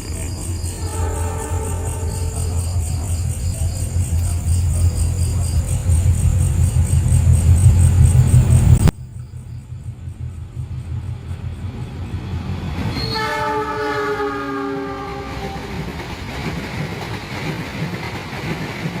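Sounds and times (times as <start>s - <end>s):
train horn sounding: 0.6s - 3.1s, 12.9s - 15.8s
low rumble: 2.6s - 12.4s.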